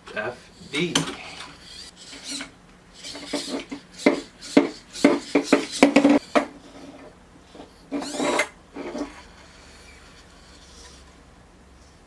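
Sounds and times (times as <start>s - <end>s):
robot arms clattering: 0.1s - 6.9s, 7.6s - 9.8s.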